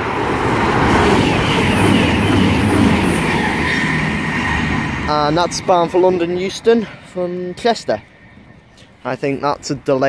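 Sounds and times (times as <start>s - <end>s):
rail clatter: 0.0s - 6.9s
train passing at speed: 0.0s - 10.0s.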